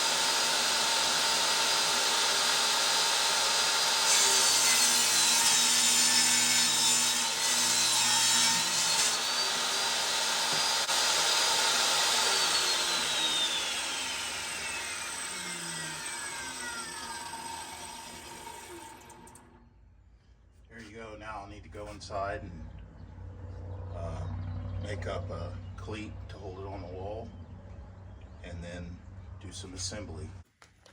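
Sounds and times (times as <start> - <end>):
power saw ripping wood: 0.0 - 19.6
saw blade winding down: 0.0 - 19.6.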